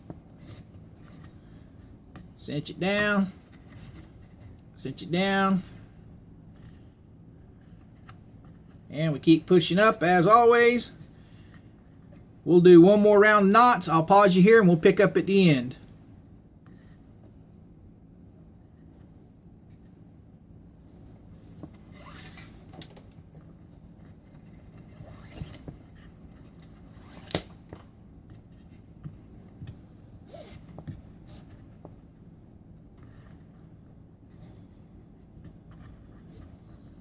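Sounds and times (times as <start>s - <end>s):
steady low hum: 0.0s - 37.0s
cord rustling and scraping: 20.8s - 37.0s.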